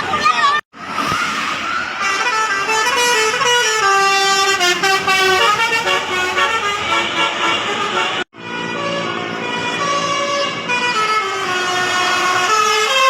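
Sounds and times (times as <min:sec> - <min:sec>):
road traffic noise: 0:00.0 - 0:13.0
multi-tone musical air horn: 0:02.0 - 0:13.0.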